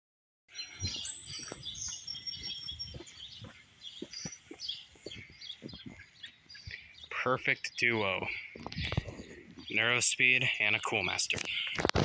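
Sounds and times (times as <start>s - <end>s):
small birds chirping: 0.5s - 11.9s.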